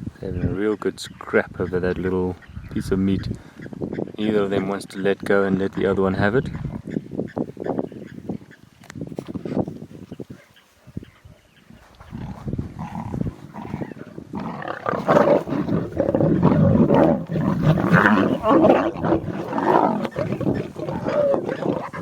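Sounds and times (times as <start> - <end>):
lion cubs growling: 11.4 - 22.0.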